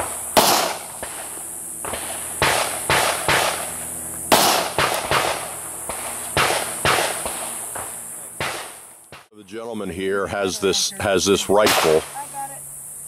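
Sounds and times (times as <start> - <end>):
pistol shots: 0.4 - 1.2, 1.8 - 3.6, 4.3 - 9.3, 11.6 - 12.1.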